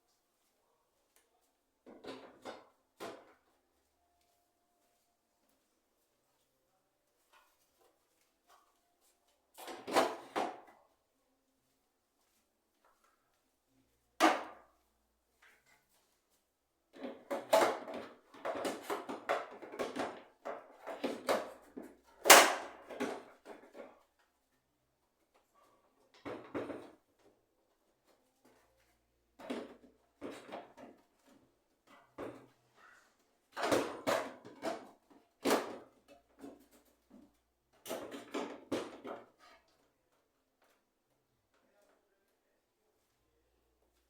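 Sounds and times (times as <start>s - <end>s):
household objects knocking and clattering: 1.8s - 3.5s, 16.9s - 24.1s, 26.2s - 27.3s, 29.4s - 32.6s, 33.5s - 39.4s.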